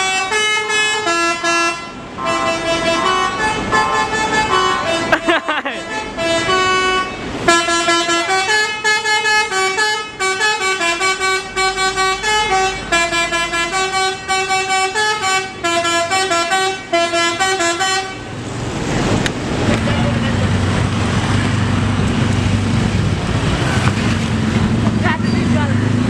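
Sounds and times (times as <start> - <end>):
bus musical air horn tune: 0.0 - 18.3
engine noise: 0.0 - 26.0
traffic noise: 0.0 - 26.0.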